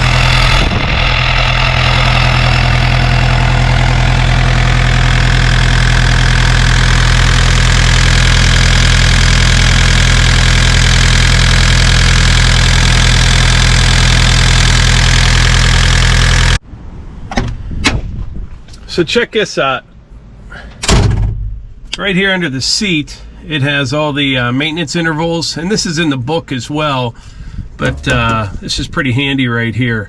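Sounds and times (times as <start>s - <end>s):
diesel engine idling: 0.0s - 16.6s.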